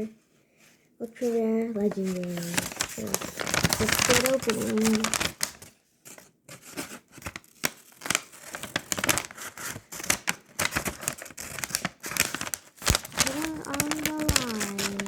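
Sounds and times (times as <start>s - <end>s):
bag wrapping crinkling and tearing: 2.0s - 5.7s, 7.3s - 15.0s.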